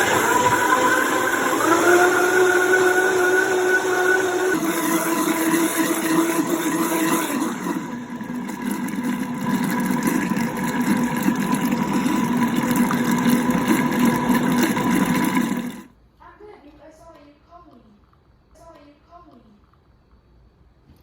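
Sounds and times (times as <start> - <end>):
blender motor running: 0.0 - 15.9.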